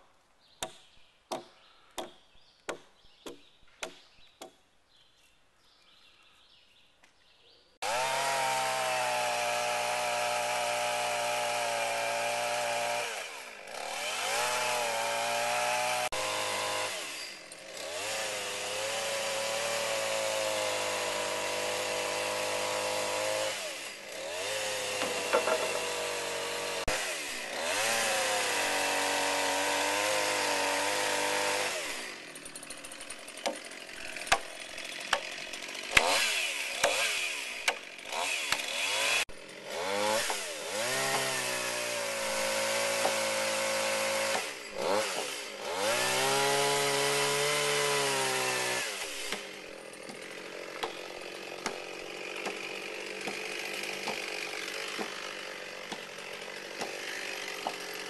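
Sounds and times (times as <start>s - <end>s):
chainsaw running at high speed: 7.8s - 58.0s
sharp knocks: 24.9s - 26.0s.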